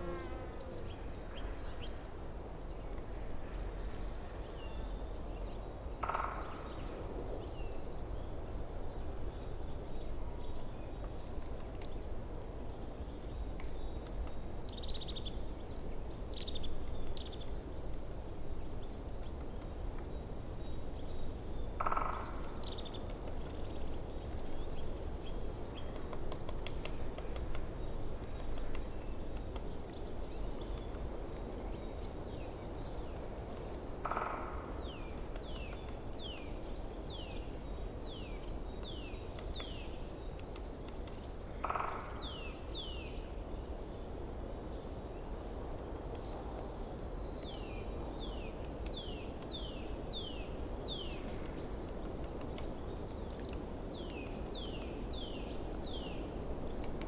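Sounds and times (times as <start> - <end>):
birds singing: 18.3 - 26.0.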